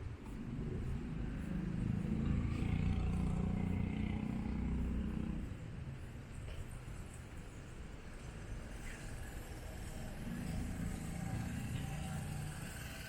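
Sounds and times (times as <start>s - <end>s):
vehicle driving past: 0.5s - 5.7s, 9.4s - 13.0s.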